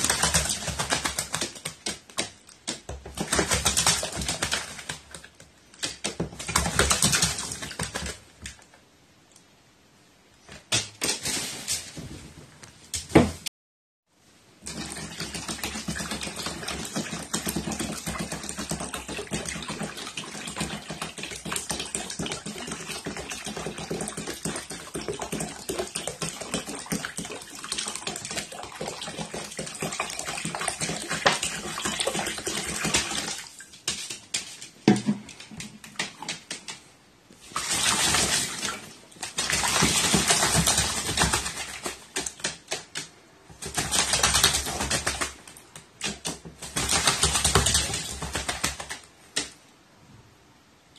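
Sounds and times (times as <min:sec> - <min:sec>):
bird splashing water with wings: 0:00.0 - 0:08.2, 0:14.6 - 0:34.5, 0:37.4 - 0:49.6.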